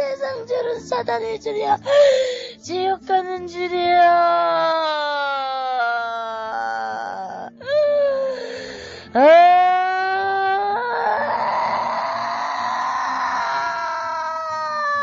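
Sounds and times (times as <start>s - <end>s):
person wailing in anguish: 9.2s - 15.0s.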